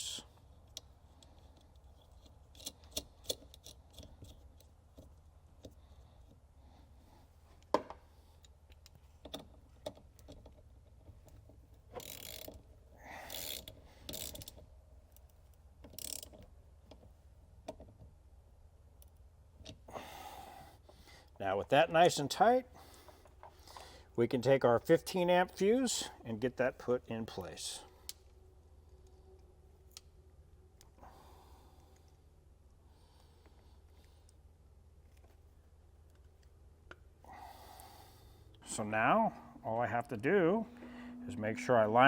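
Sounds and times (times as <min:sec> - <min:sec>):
ratchet wrench clicking: 0:11.9 - 0:14.6, 0:15.8 - 0:16.4.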